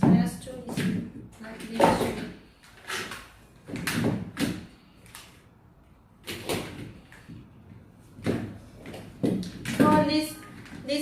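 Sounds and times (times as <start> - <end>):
plastic power strips knocking: 3.1 - 4.8, 8.2 - 10.9.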